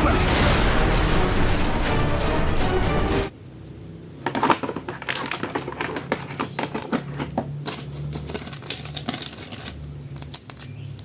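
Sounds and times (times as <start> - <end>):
packaging crinkling: 4.2 - 11.0
plastic toys clicking and tapping: 4.2 - 11.0.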